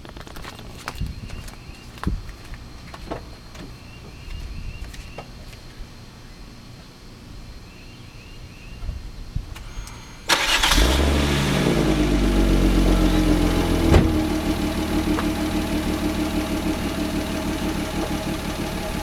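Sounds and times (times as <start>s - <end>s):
car engine starting and idling: 9.6s - 19.0s.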